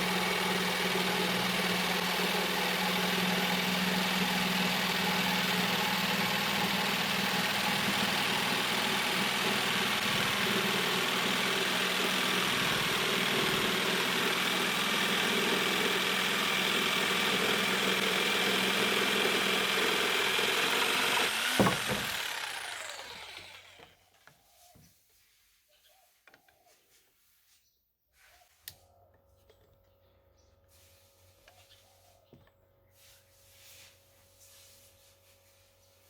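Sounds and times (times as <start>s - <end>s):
jigsaw cutting: 0.0s - 24.0s.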